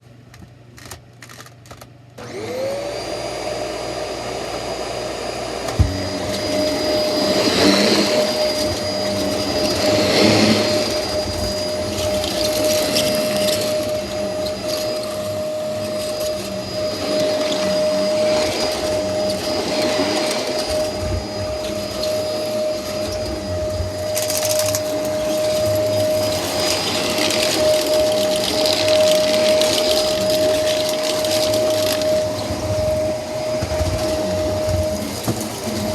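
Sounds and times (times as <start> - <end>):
vacuum cleaner on a rug: 2.2 - 35.9.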